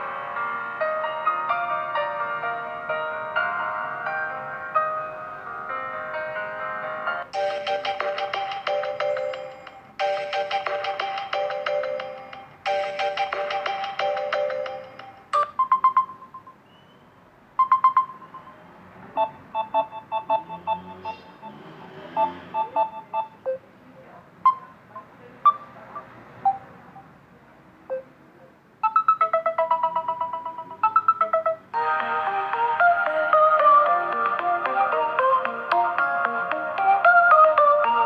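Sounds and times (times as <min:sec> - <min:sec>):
phone ringtone melodies: 0:07.3 - 0:16.6, 0:17.6 - 0:23.6, 0:28.8 - 0:38.0.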